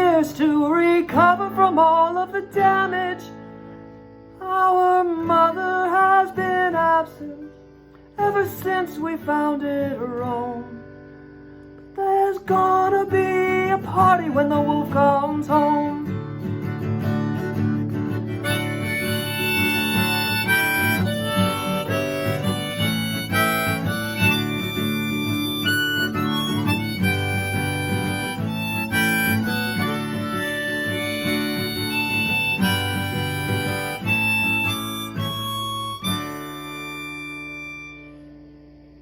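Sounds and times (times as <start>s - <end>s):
strummed acoustic guitar: 0.0s - 39.0s
harmonica melody: 16.2s - 38.4s.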